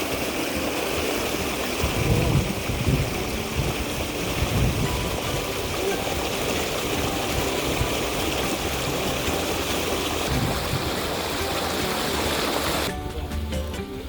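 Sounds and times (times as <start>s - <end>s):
stream water rushing over stones: 0.0s - 14.0s
quiet music: 0.5s - 14.0s.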